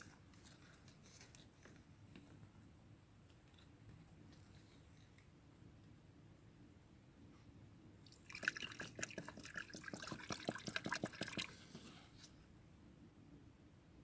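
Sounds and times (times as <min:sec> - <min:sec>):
water splashing and dripping: 0:08.0 - 0:11.6.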